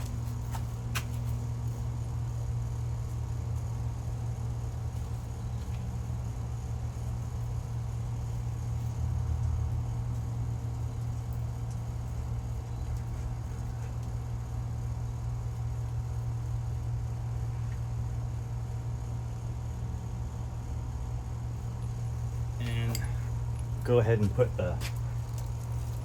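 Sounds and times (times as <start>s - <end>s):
low droning hum: 0.0s - 26.0s.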